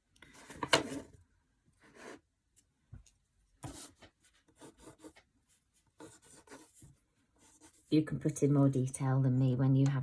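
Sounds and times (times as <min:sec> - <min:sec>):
pencil scratching on paper: 0:03.6 - 0:08.7.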